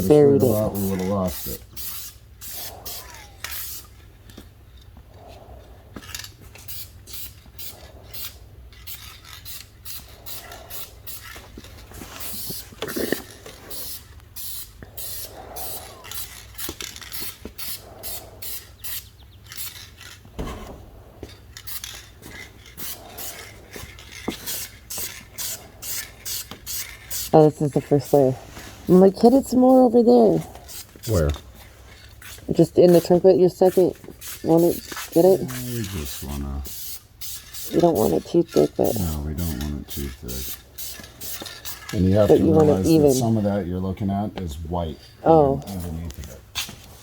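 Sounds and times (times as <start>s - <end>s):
spray can hissing bursts: 0.4s - 4.0s, 6.6s - 11.4s, 12.1s - 19.9s, 21.6s - 22.1s, 22.7s - 23.6s, 24.3s - 28.3s, 32.2s - 41.9s.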